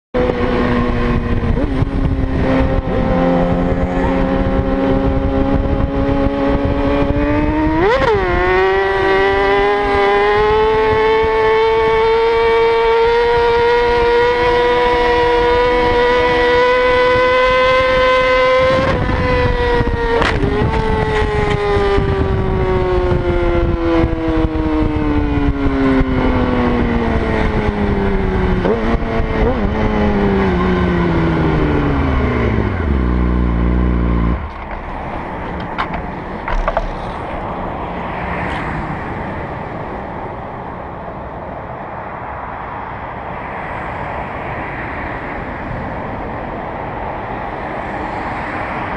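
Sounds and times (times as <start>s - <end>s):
wind and road noise: 0.1s - 48.9s
motorcycle engine revving: 0.2s - 37.3s.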